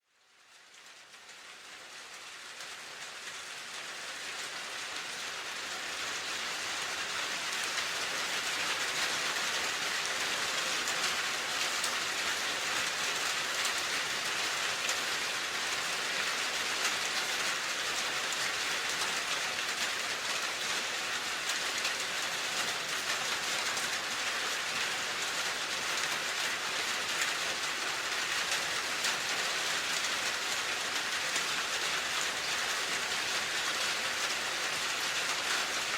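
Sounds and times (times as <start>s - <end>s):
steady rain: 0.0s - 35.9s.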